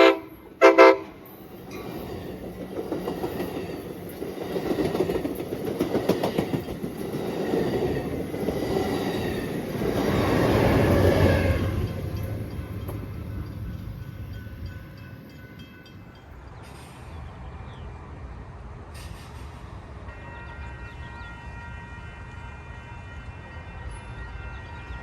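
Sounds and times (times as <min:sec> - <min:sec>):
train horn: 0:00.0 - 0:01.3, 0:20.0 - 0:25.0
train rumbling past: 0:00.0 - 0:25.0.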